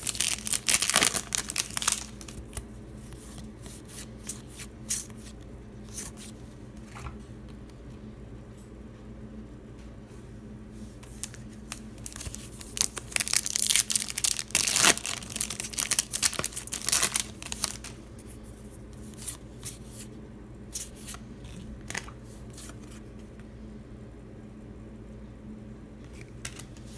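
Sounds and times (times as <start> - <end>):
wrapper tearing and crinkling: 0.0 - 2.6, 11.1 - 18.0
steady low hum: 0.0 - 26.9.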